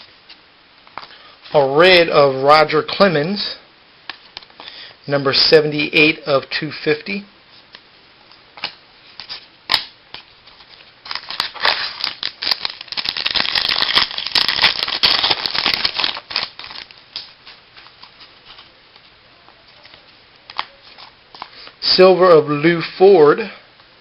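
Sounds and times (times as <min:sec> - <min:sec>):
wrapper crinkling and rustling: 0:08.6 - 0:21.7.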